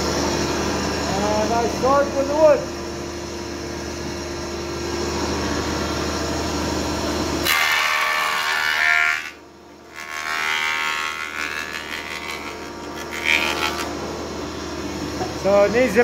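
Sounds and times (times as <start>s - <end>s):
planer-thicknesser running: 0.0s - 16.0s
board cutting with a whine: 4.1s - 15.5s.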